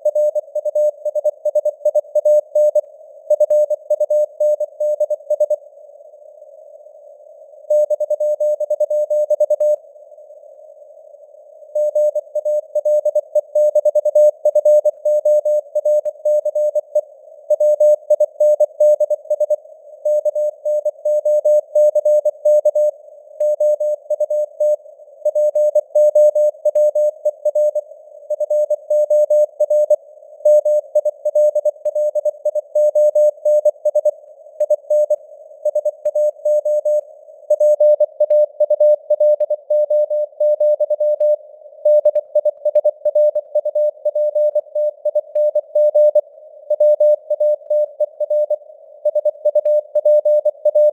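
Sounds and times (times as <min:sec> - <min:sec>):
morse code keyed tone: 0:34.7 - 0:50.9.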